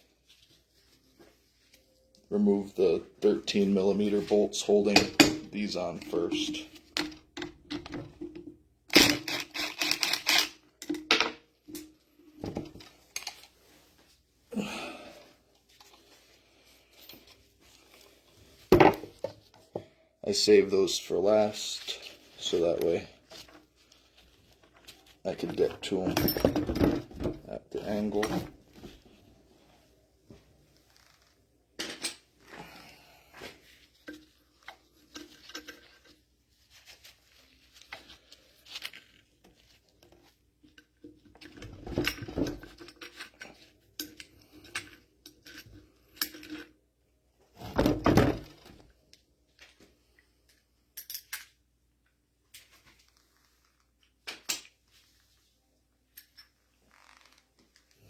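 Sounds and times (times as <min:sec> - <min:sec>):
metal tools clinking: 0:03.5 - 0:08.3, 0:25.4 - 0:28.5.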